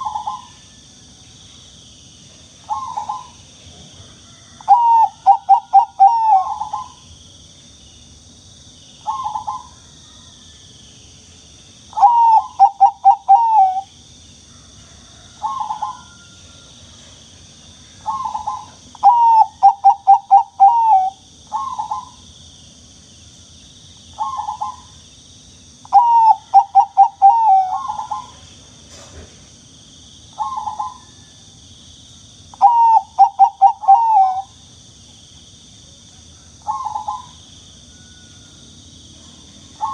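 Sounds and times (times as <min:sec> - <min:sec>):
dove cooing: 0:00.0 - 0:00.6, 0:02.7 - 0:03.4, 0:04.6 - 0:07.0, 0:09.0 - 0:09.8, 0:11.9 - 0:13.9, 0:15.1 - 0:16.3, 0:18.0 - 0:22.2, 0:24.2 - 0:25.0, 0:25.9 - 0:28.5, 0:30.4 - 0:31.2, 0:32.6 - 0:34.6, 0:36.4 - 0:37.4.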